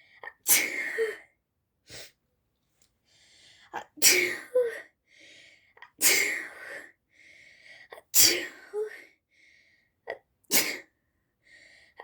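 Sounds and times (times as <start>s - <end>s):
person sneezing: 10.5s - 10.8s.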